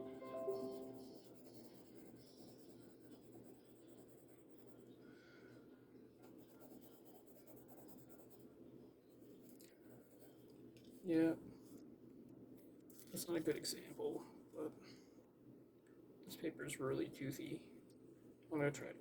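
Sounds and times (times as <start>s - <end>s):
pencil scratching on paper: 0.1s - 5.0s, 6.2s - 8.5s, 9.1s - 10.4s.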